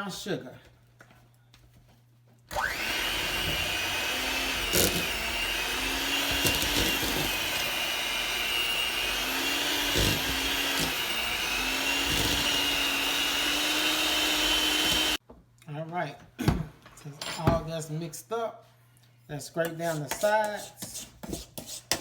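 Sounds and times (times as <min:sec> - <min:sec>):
electric mixer whining: 0:02.5 - 0:15.2.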